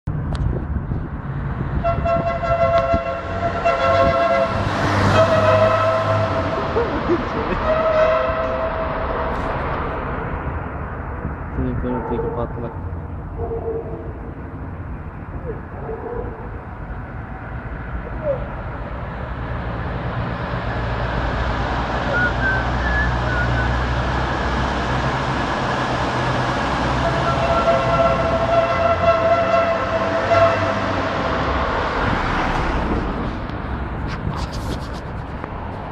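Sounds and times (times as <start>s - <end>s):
vehicle engine drone: 0.1s - 35.9s
multi-tone musical car horn: 1.8s - 6.7s, 7.5s - 9.5s, 26.9s - 31.4s.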